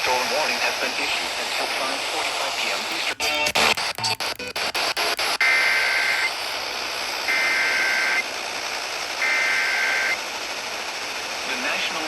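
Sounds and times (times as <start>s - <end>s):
radio hiss: 0.0s - 12.0s
irregular clicks: 3.2s - 5.4s.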